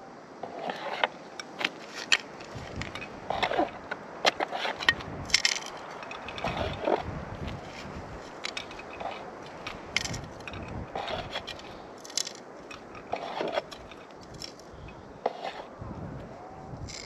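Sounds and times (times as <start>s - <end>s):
scoop scraping gravelly soil: 0.4s - 15.7s.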